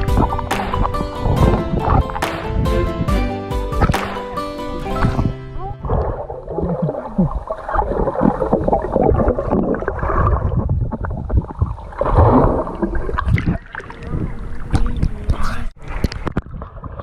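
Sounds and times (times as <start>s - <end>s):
sea water sloshing: 5.0s - 17.0s
wind on microphone: 5.0s - 17.0s.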